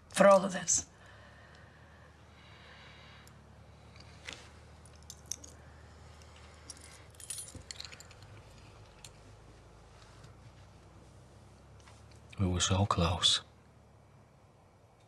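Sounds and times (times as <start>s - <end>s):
small sharp clicks and clinks: 4.8s - 5.6s, 6.2s - 9.2s
faint rustling: 5.8s - 12.4s.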